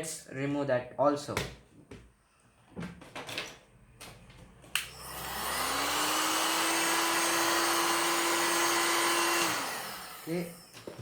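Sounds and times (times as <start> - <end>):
hot-air blower running: 4.8 - 11.0.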